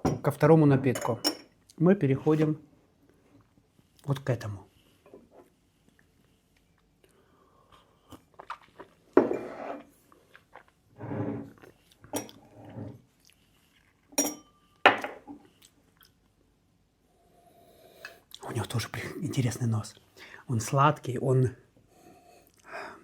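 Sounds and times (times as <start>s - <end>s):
glass clinks: 14.2s - 14.6s.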